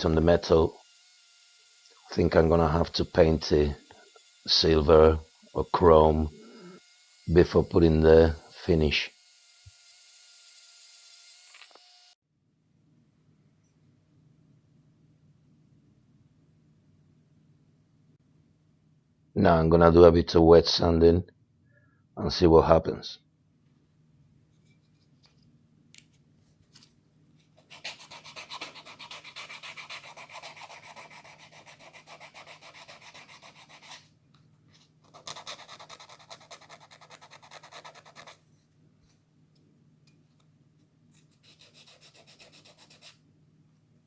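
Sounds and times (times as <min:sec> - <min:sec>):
sandpaper rubbing on metal: 0:27.6 - 0:34.0, 0:41.4 - 0:43.2.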